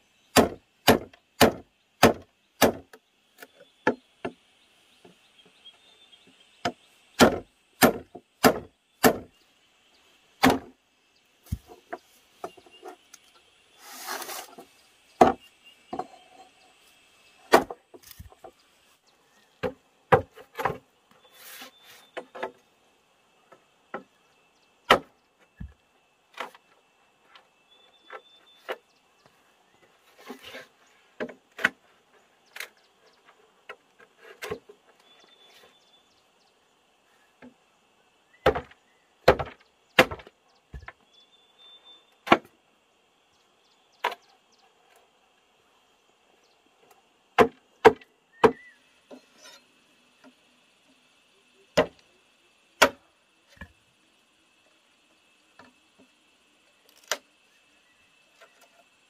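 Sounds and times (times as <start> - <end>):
wood being struck: 0.3 - 3.0, 6.6 - 9.3, 10.4 - 10.8, 15.2 - 16.1, 17.5 - 18.6, 24.9 - 25.8, 38.4 - 41.0, 47.4 - 48.7.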